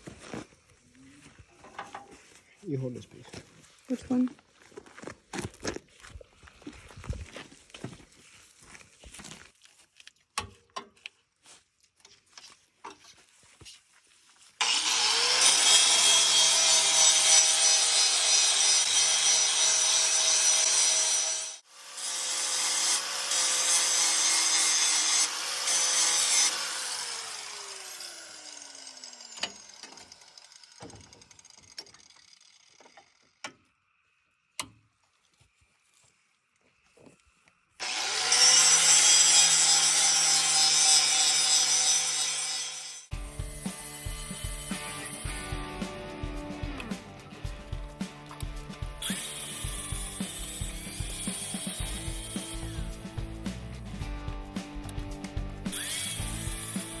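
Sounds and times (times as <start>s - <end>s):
power grinder grinding metal: 14.6s - 33.0s, 37.8s - 54.0s, 55.6s - 57.0s.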